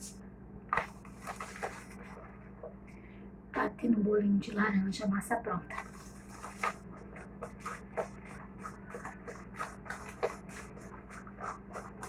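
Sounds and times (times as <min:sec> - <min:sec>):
utensil beating batter in bowl: 0:05.7 - 0:12.0.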